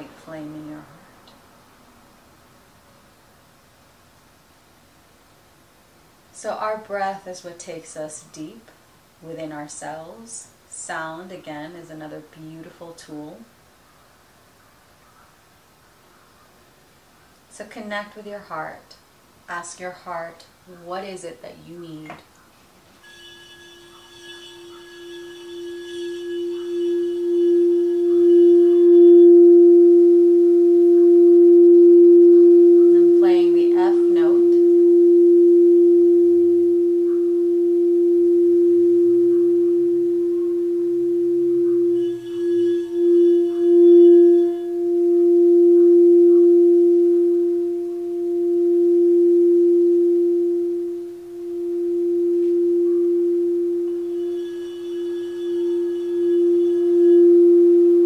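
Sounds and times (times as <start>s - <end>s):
singing bowl sustained tone: 23.0s - 58.0s.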